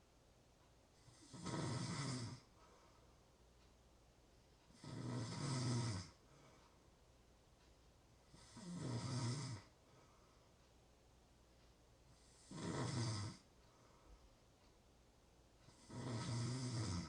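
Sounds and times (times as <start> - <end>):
person snoring: 1.0 - 2.5, 4.7 - 6.2, 8.3 - 9.7, 12.2 - 13.4, 15.7 - 17.0.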